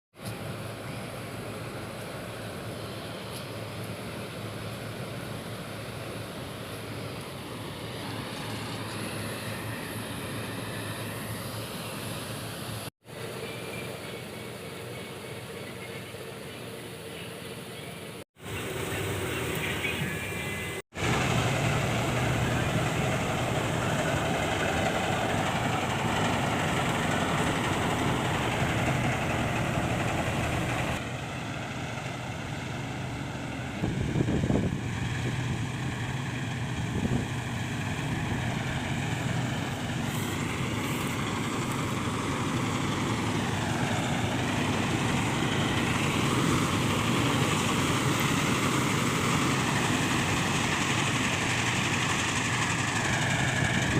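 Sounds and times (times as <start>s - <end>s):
farm machine engine running: 0.2s - 53.9s.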